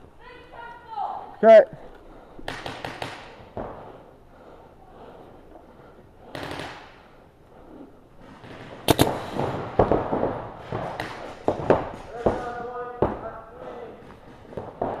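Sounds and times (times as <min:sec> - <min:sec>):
paintball markers popping: 0:08.9 - 0:09.4.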